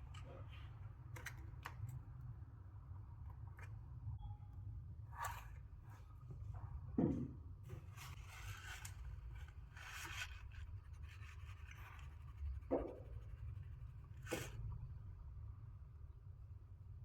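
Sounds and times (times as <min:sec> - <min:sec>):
light scraping and rubbing: 0:07.7 - 0:14.9.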